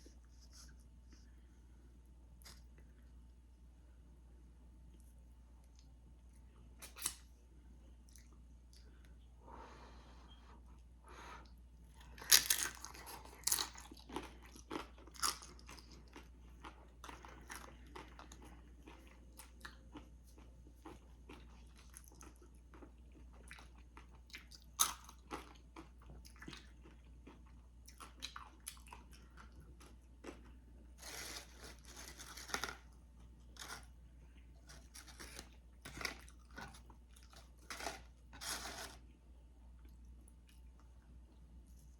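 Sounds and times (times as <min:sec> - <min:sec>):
crunching tortilla chips: 0:12.0 - 0:22.8, 0:23.6 - 0:39.0.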